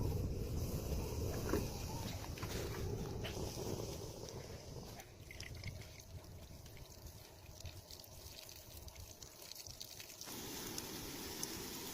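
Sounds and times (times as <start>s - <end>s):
steady water hiss: 0.0s - 11.9s
water trickling: 4.3s - 11.9s.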